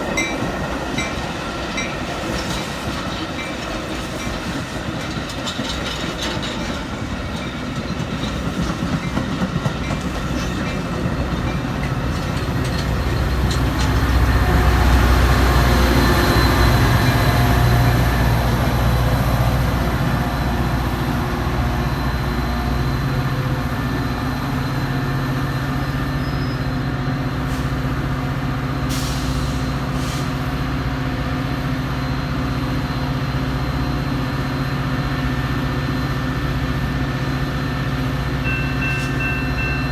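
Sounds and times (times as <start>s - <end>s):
train wheels clicking over rail joints: 0.0s - 21.2s
diesel locomotive engine drone: 0.0s - 39.9s.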